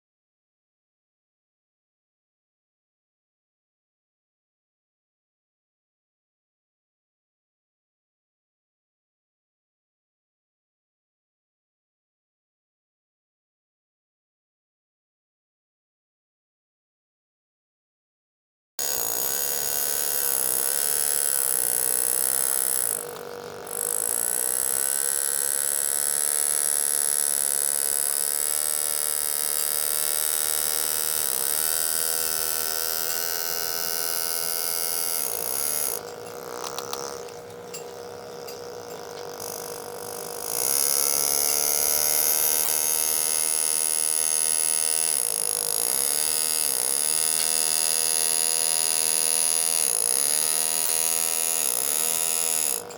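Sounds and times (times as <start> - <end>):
engraving handpiece buzzing: 18.8 - 52.9.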